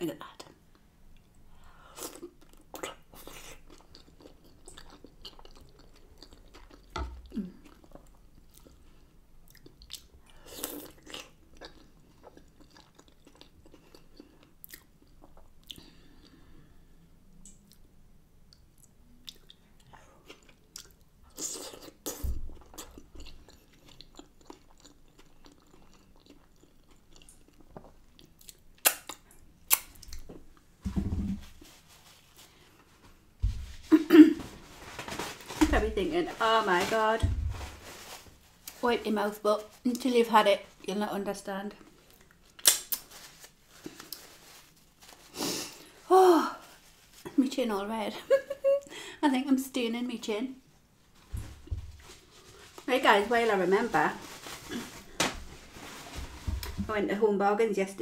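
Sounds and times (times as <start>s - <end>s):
person chewing food: 2.0s - 16.4s, 18.5s - 30.6s
wet mouth smacks and clicks: 28.4s - 30.2s, 42.6s - 43.0s.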